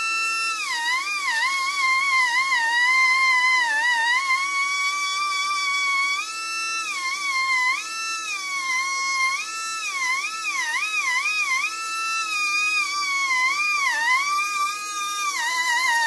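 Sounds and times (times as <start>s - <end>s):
rotary tool whining on metal: 0.0s - 16.0s.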